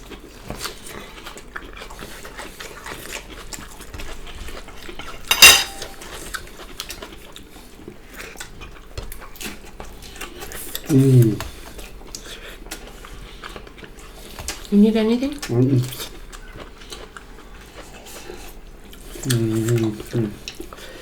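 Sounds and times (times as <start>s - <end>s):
spoons and dishes clinking: 5.3s - 6.1s.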